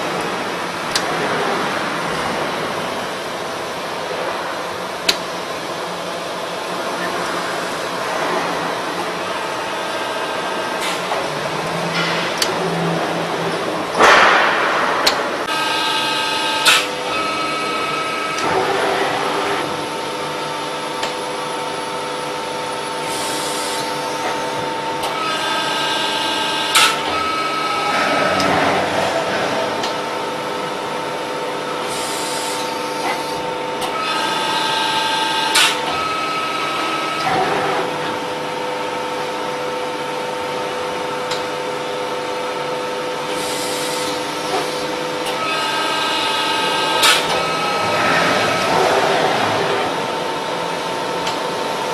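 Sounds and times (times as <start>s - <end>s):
machine clank: 13.8s - 15.6s, 27.7s - 30.8s
machine whine: 23.6s - 32.9s, 45.3s - 51.9s.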